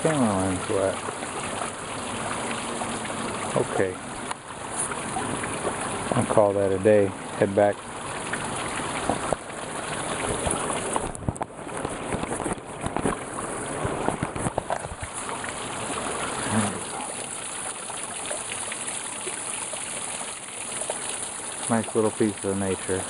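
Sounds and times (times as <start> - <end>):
waterfall rushing and splashing: 0.0 - 23.0.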